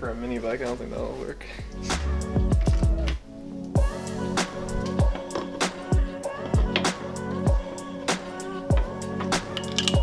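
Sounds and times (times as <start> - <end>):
held chords: 1.5 - 10.0
kick drum: 2.4 - 3.0, 6.0 - 6.7.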